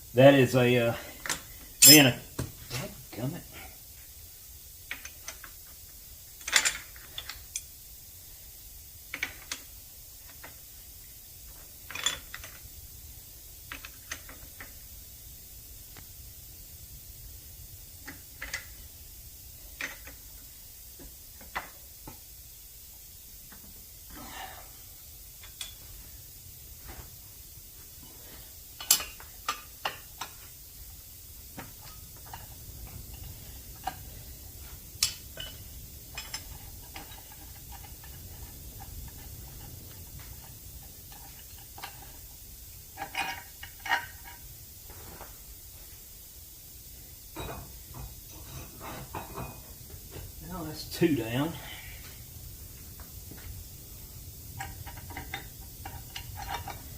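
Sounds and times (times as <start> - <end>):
metal tools clinking and knocking: 1.8 - 2.2.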